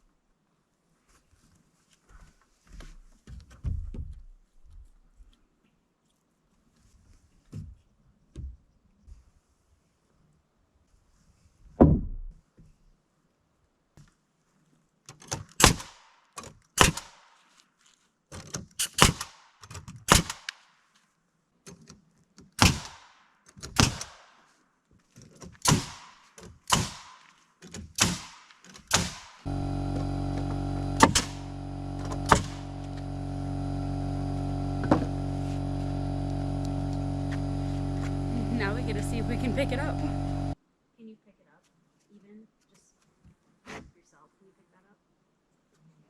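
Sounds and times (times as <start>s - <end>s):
nails hammered into wood: 15.6s - 16.0s, 16.8s - 17.2s, 18.9s - 20.5s, 22.6s - 24.2s, 25.6s - 29.4s, 31.0s - 31.4s, 32.3s - 32.6s
machine hum: 29.5s - 40.6s.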